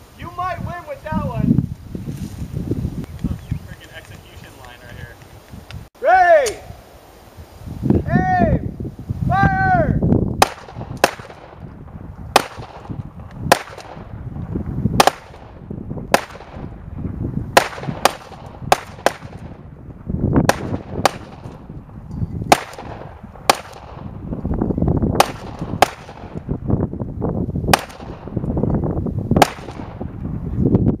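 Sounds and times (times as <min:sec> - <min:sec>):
low rumble: 0:10.0 - 0:31.0
sharp gunshots cracking: 0:10.4 - 0:24.5, 0:25.1 - 0:26.6, 0:27.7 - 0:28.6, 0:29.3 - 0:30.3.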